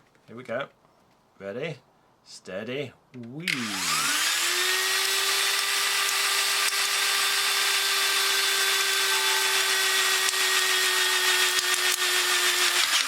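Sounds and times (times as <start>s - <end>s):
sharp clicks: 3.2s - 3.9s
crimping tool motor whine: 3.5s - 13.0s.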